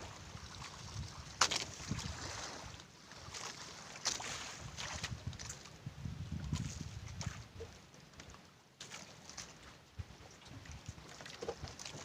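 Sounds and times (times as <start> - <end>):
wind rumbling on microphone: 0.0 - 2.8, 4.3 - 7.8.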